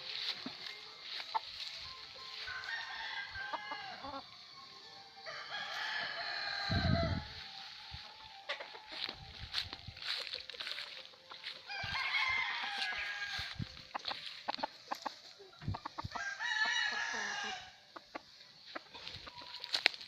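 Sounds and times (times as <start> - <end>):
roosters crowing: 2.3 - 4.3, 5.2 - 15.1, 15.7 - 18.0.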